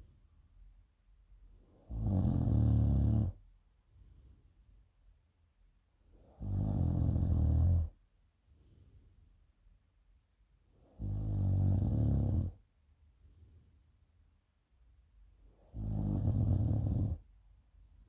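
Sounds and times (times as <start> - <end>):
faint breath: 0.0 - 0.5, 3.8 - 4.9, 8.4 - 9.5, 13.1 - 14.0
person snoring: 1.9 - 3.4, 11.0 - 12.6, 15.7 - 17.2.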